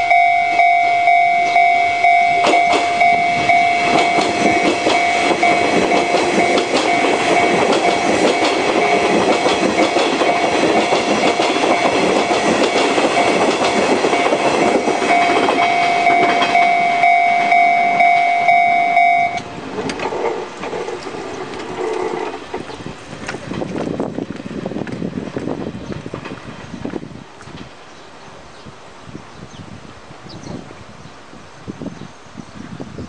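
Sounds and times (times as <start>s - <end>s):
level crossing bell ringing: 0.0s - 9.2s, 14.1s - 19.4s
train wheels clattering on rails: 1.4s - 27.8s.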